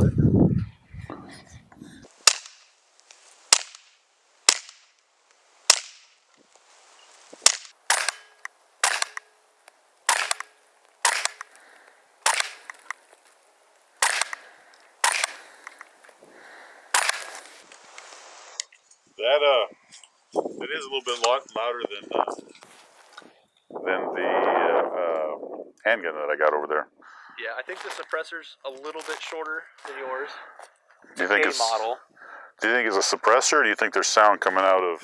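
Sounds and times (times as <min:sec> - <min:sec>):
suppressed gunshots: 0:07.4 - 0:13.0, 0:14.0 - 0:17.6.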